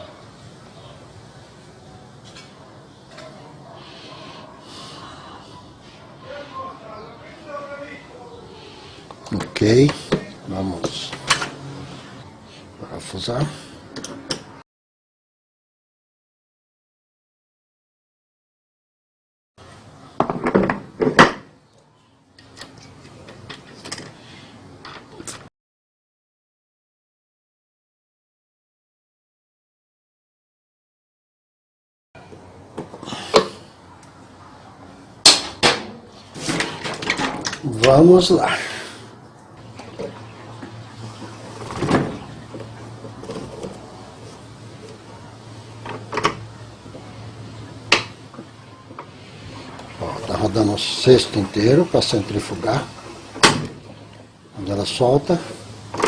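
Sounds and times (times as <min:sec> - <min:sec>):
washer electrical hum: 0:09.0 - 0:14.6, 0:32.2 - 0:56.0
parts scraping: 0:09.4 - 0:12.2, 0:22.4 - 0:24.4, 0:35.3 - 0:38.5, 0:41.0 - 0:46.5
plastic and metal parts clattering: 0:36.4 - 0:37.6, 0:41.6 - 0:45.1
washer drive clunks and clicks: 0:41.5 - 0:45.1, 0:45.8 - 0:46.5, 0:53.4 - 0:53.8.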